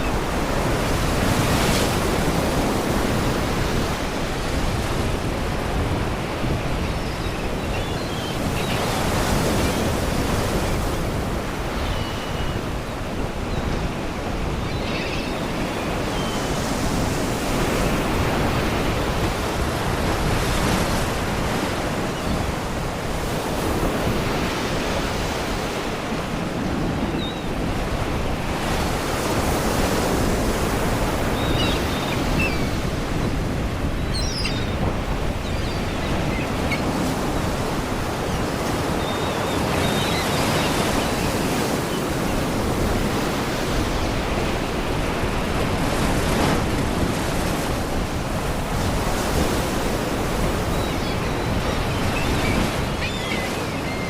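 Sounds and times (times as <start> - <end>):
sea waves washing against rocks: 21.0 - 50.7
seagull cries: 31.2 - 32.9, 34.0 - 42.1.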